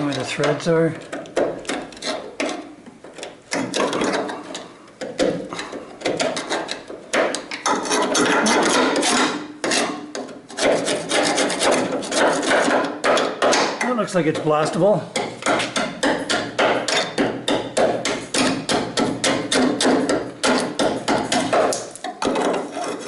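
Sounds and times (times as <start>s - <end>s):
scraping on metal: 0.0s - 23.0s.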